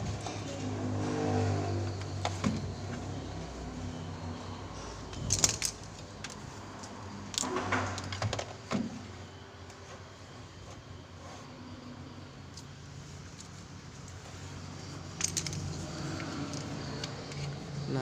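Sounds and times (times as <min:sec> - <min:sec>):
metallic clicks and rattles of wiring: 0:05.1 - 0:08.6, 0:15.0 - 0:17.6.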